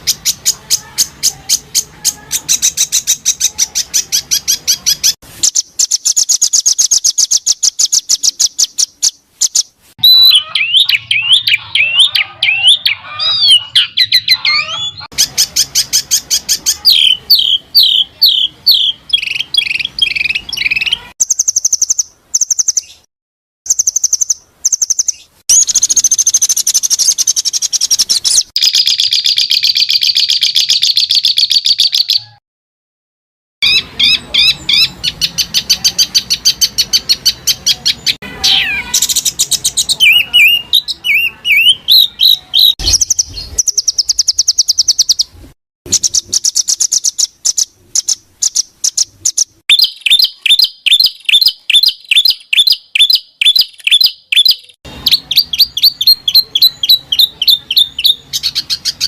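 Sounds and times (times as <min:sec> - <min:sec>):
high bird trill: 0:00.0 - 0:23.1, 0:23.7 - 0:32.4, 0:33.6 - 0:59.0
warbling whistled bird song: 0:00.0 - 0:23.1, 0:23.7 - 0:32.4, 0:33.6 - 0:45.3, 0:45.9 - 0:59.0
rapid high bird chips: 0:23.7 - 0:30.9.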